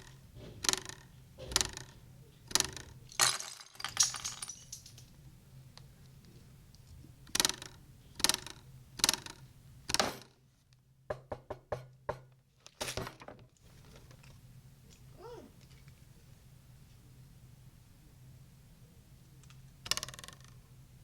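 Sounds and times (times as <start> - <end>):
loud cartoon knocks: 11.1 - 12.3.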